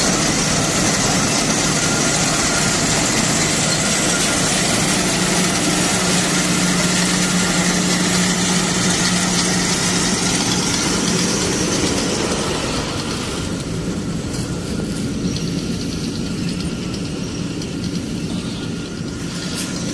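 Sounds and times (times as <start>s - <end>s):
harvesting machine engine: 0.0s - 19.9s
machine hiss: 0.0s - 19.9s.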